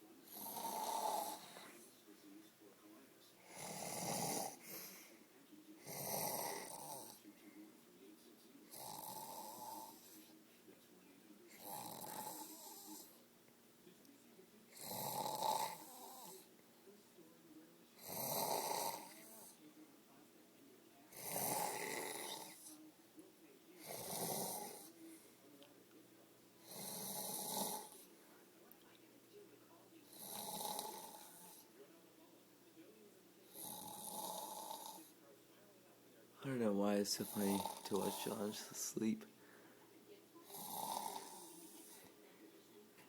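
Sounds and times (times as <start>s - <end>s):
heavy rasping snoring: 0.3s - 1.8s, 3.4s - 4.9s, 5.8s - 7.2s, 8.7s - 10.2s, 11.5s - 13.1s, 14.8s - 16.5s, 18.0s - 19.5s, 21.1s - 22.7s, 23.8s - 25.0s, 26.6s - 28.1s, 30.1s - 31.6s, 33.5s - 35.1s, 37.1s - 38.6s, 40.4s - 42.1s.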